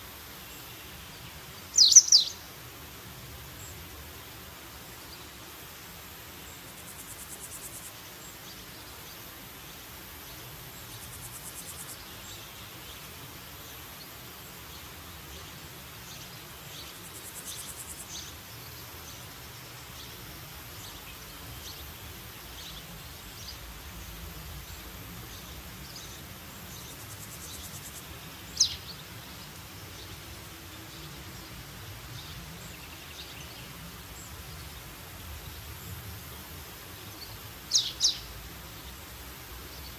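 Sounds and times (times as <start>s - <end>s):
steady background hiss: 0.0s - 39.9s
faint bird chirps: 0.5s - 2.5s, 14.7s - 31.6s, 37.1s - 39.0s
sharp downward bird call: 1.8s - 2.4s.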